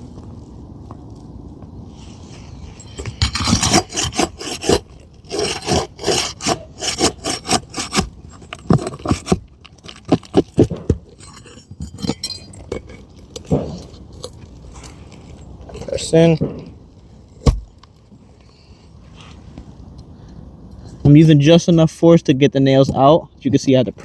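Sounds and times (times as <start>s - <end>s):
pry tool scraping roof shingles: 2.8s - 17.8s.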